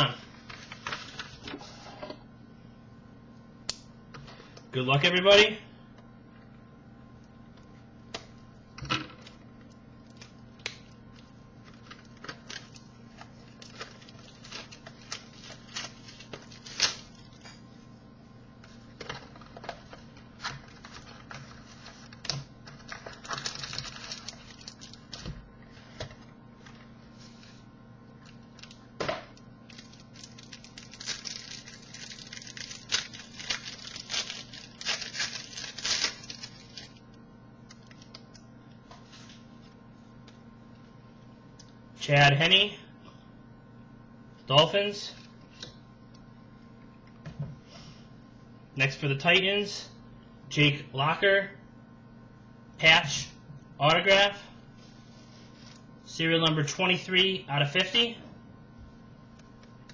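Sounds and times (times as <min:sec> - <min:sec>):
low electrical hum: 0:00.0 - 0:59.9
foil wrapper crinkling and tearing: 0:11.6 - 0:17.4, 0:20.4 - 0:25.3, 0:28.2 - 0:28.8, 0:29.6 - 0:37.0.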